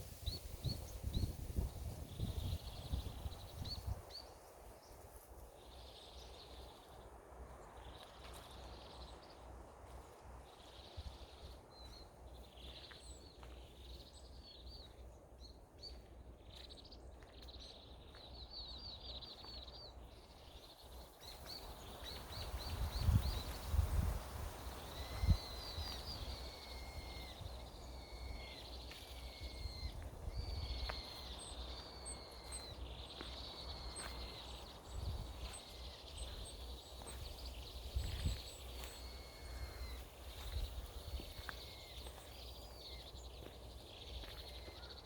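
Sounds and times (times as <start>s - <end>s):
wind rumble on microphone: 0.0s - 5.0s, 21.2s - 32.8s, 33.5s - 43.6s
songbirds calling: 0.0s - 45.0s.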